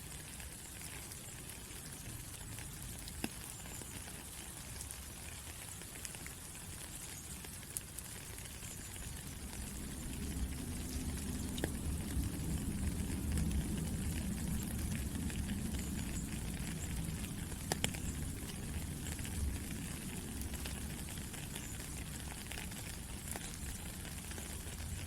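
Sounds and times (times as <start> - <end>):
steady rain pattering: 0.0 - 25.0.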